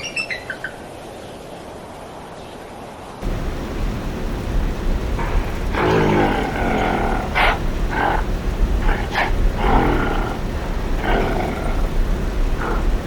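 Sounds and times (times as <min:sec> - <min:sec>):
animal harsh calls: 0:03.2 - 0:13.0
low rumble: 0:03.2 - 0:13.0.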